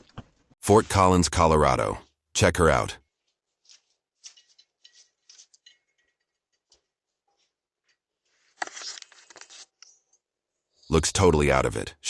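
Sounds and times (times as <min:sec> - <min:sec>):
scraping rustle: 0:03.1 - 0:09.8.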